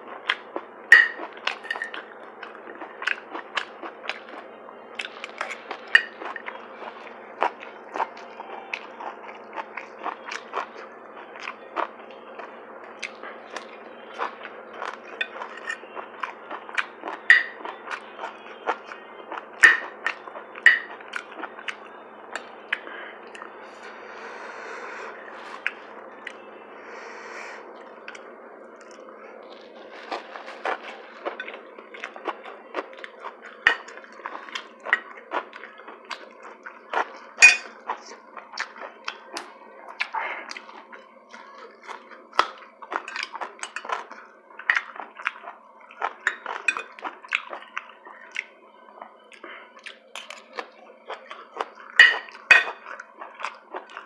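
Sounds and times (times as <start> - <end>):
person chewing: 0.0 - 26.5, 27.1 - 54.0
cutlery clinking against dishes: 0.9 - 2.1, 5.3 - 6.5, 15.2 - 15.9, 17.3 - 17.6, 19.6 - 21.0, 33.6 - 34.0, 37.4 - 37.8, 46.2 - 47.0, 51.9 - 52.9.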